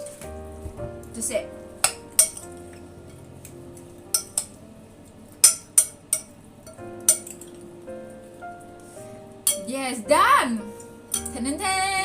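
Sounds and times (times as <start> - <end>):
background music: 0.0 - 12.0
cutlery clinking against a dish: 1.8 - 2.5, 4.1 - 4.6, 5.4 - 7.5, 9.5 - 9.7, 11.1 - 11.4.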